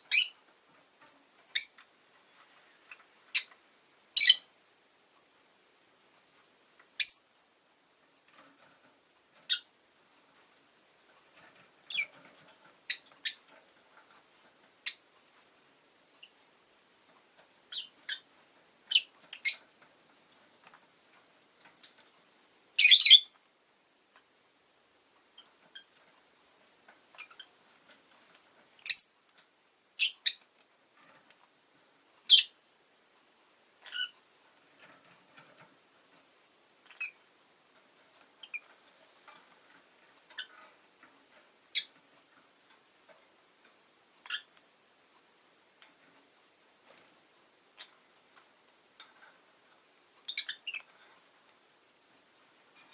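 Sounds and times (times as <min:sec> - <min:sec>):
lovebird chirping: 0:00.0 - 0:00.4, 0:01.5 - 0:01.8, 0:03.3 - 0:03.5, 0:04.2 - 0:04.5, 0:07.0 - 0:07.3, 0:09.5 - 0:09.7, 0:11.9 - 0:12.2, 0:12.9 - 0:13.4, 0:17.7 - 0:18.3, 0:18.9 - 0:19.6, 0:22.8 - 0:23.3, 0:28.8 - 0:29.2, 0:30.0 - 0:30.5, 0:32.3 - 0:32.6, 0:33.8 - 0:34.2, 0:36.8 - 0:37.2, 0:38.4 - 0:38.7, 0:41.7 - 0:41.9, 0:44.2 - 0:44.5, 0:50.2 - 0:50.9.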